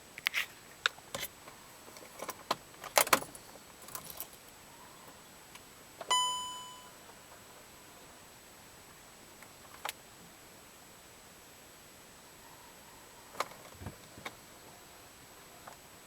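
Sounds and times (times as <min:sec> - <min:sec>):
car keys jangling: 0:02.0 - 0:04.4
dashboard chime: 0:06.1 - 0:07.0.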